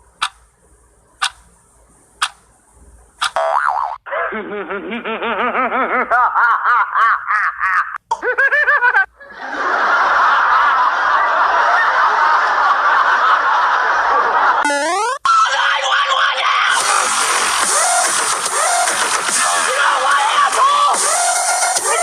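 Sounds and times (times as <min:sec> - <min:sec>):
high-pitched snickering laugh: 0:04.1 - 0:09.6.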